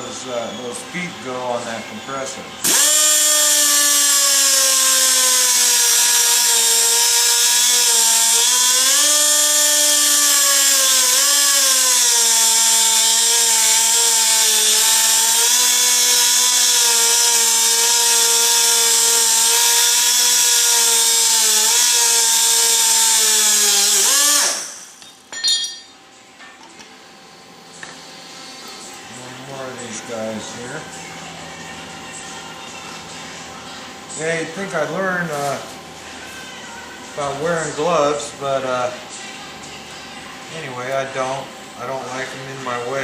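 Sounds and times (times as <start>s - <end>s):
power tool winding down: 2.6s - 24.9s
power tool cutting steel: 2.6s - 25.8s.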